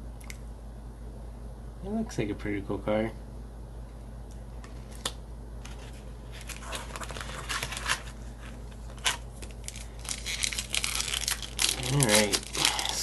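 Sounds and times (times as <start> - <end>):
foil wrapper crinkling: 6.3 - 13.0
foil wrapper snap: 8.9 - 13.0.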